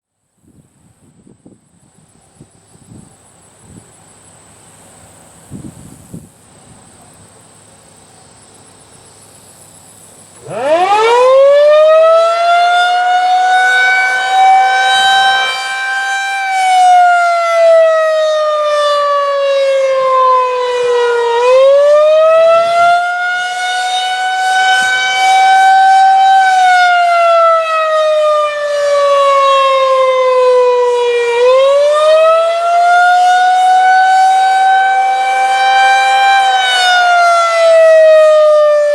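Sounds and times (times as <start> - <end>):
rotating siren wailing: 10.4 - 38.9.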